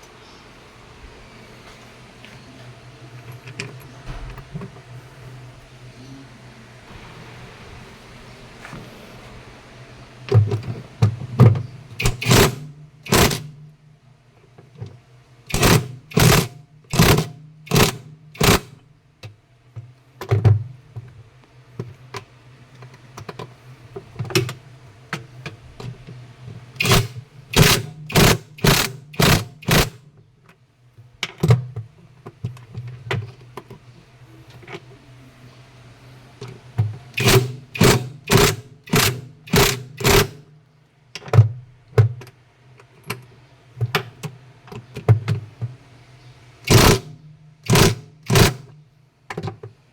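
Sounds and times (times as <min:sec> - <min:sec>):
sharp metallic knocks and clanks: 0:12.0 - 0:13.5, 0:15.5 - 0:18.8, 0:26.8 - 0:30.0, 0:37.2 - 0:40.4, 0:46.7 - 0:48.7.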